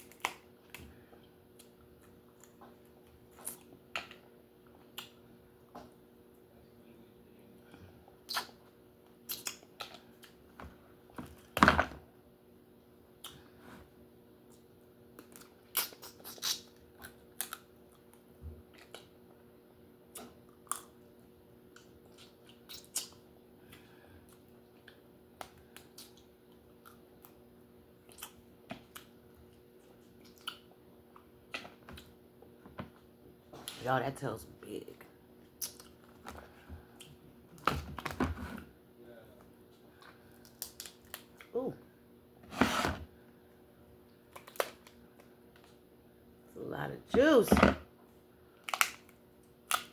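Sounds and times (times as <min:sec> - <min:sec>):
lobster shell cracking: 0:48.6 - 0:49.9.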